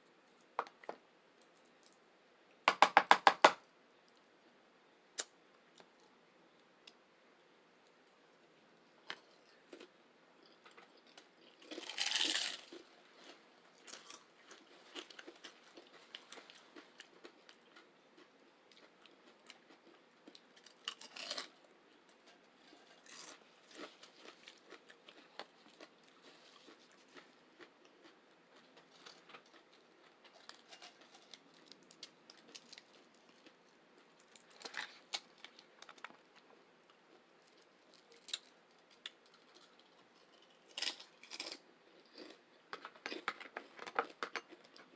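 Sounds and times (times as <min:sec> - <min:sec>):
soft chewing: 0:05.2 - 0:44.9
crunchy chip bites: 0:09.1 - 0:21.6, 0:22.9 - 0:33.6, 0:40.5 - 0:44.9.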